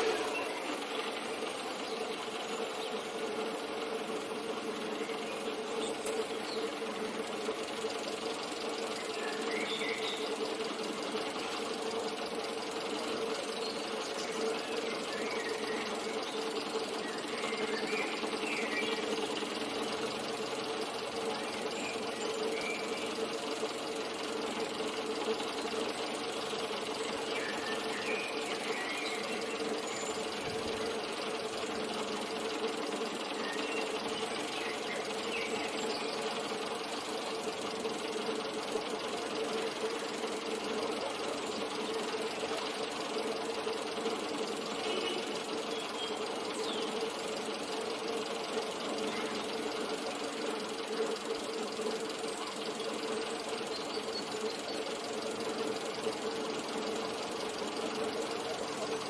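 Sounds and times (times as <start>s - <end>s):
motor humming: 0.0s - 59.0s.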